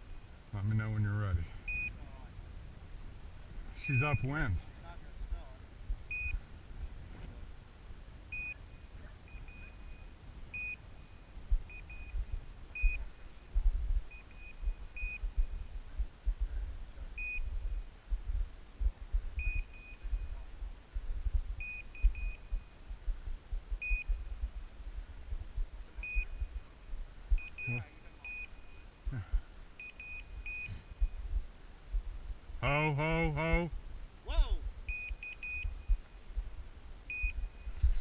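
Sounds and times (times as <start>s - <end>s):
beeper collar high beeps: 1.4s - 2.2s, 3.8s - 4.6s, 8.3s - 13.5s, 14.1s - 15.7s, 17.2s - 17.6s, 19.4s - 20.5s, 21.6s - 22.8s, 26.0s - 26.6s, 27.4s - 31.2s, 34.9s - 36.0s, 37.1s - 38.0s
wind rumble on microphone: 11.4s - 27.7s.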